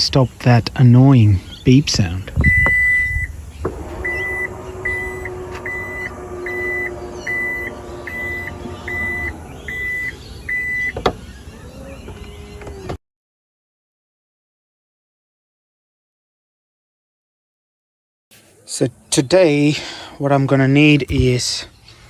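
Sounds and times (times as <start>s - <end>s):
power tailgate motor hum: 2.4s - 13.0s
high warning buzzer beeps: 2.5s - 11.1s.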